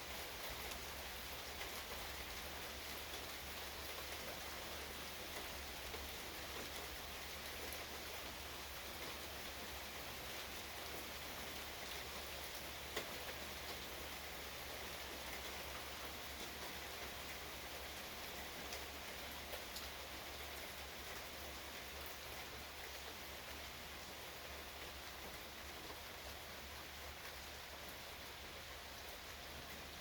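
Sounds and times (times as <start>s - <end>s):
steady rain hiss: 0.0s - 30.0s.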